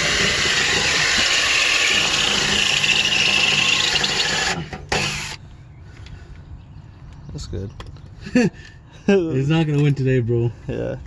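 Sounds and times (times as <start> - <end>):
power drill boring into metal: 0.0 - 5.4.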